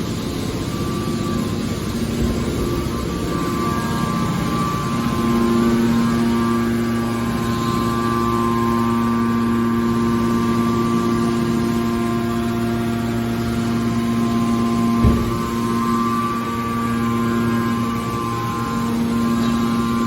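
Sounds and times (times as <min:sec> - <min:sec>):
scrap baler machine hum: 0:00.0 - 0:20.0
single knock: 0:15.0 - 0:15.6.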